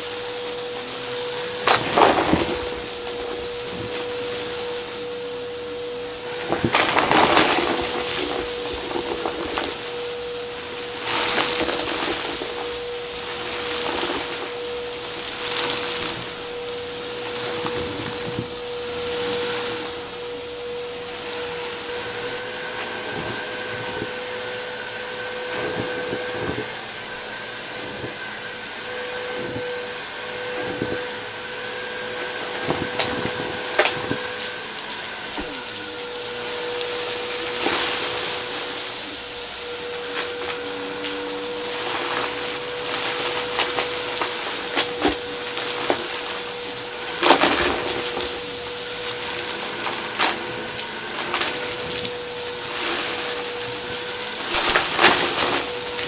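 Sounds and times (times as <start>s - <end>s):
debris clicking and rattling: 0.0s - 5.3s, 5.9s - 20.4s, 32.2s - 56.0s
vacuum cleaner whining: 0.0s - 56.0s.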